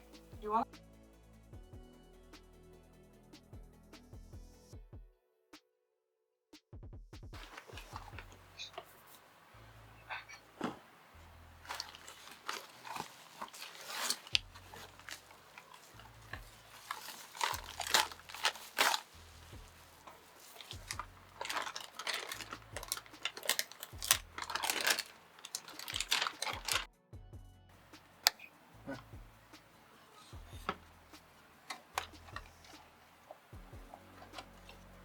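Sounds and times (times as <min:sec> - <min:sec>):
short rustling: 0:07.4 - 0:26.9, 0:27.7 - 0:35.0.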